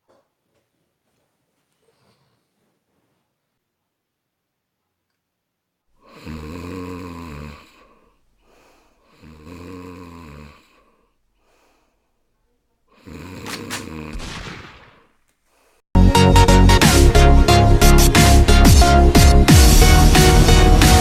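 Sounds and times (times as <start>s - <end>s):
person snoring: 6.0s - 12.0s, 12.9s - 14.2s.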